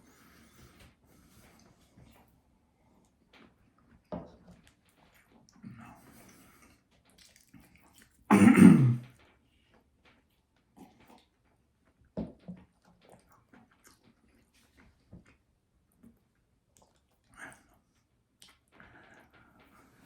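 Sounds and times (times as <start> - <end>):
man's throat noises: 8.3 - 9.1.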